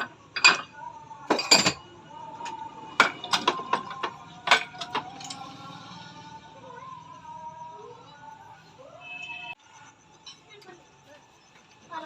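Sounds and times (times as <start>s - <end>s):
metal parts clinking: 1.3s - 1.8s, 2.4s - 5.6s.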